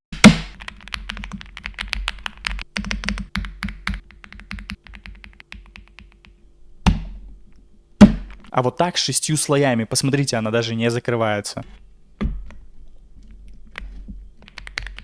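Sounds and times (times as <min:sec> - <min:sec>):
mechanical keyboard typing: 0:00.5 - 0:06.4, 0:13.8 - 0:15.0.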